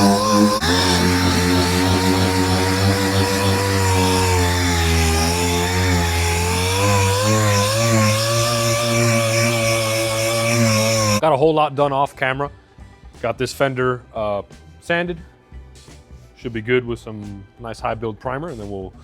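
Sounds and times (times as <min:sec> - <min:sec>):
power sander on car panel: 0:00.0 - 0:11.2.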